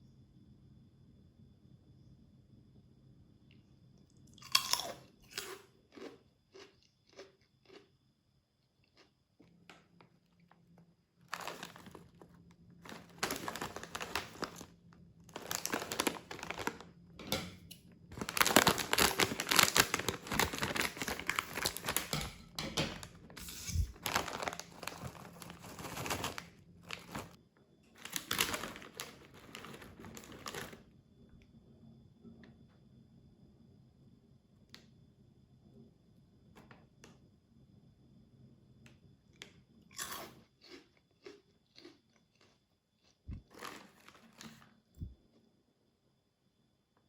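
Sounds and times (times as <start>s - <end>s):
snack wrapper crinkling: 11.2s - 16.9s, 18.1s - 27.4s, 28.0s - 30.8s, 40.0s - 44.7s.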